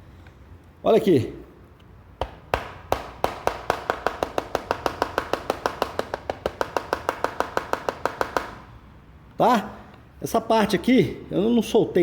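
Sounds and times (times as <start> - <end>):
rapid tapping on plastic cover: 2.2 - 8.8.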